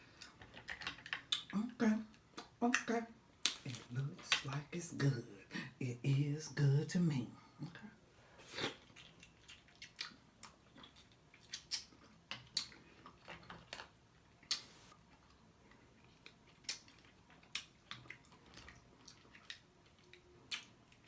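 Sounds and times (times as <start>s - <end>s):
wet lip smacks and chewing: 8.5s - 13.3s, 14.4s - 21.0s.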